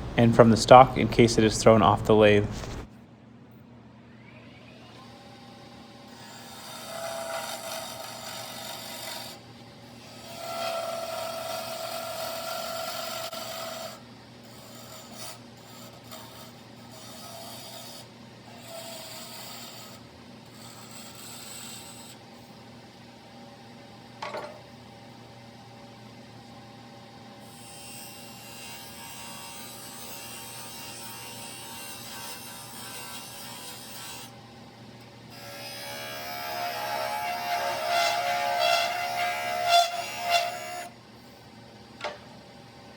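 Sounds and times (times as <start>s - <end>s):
turning tool rasping on wood: 10.4s - 17.2s.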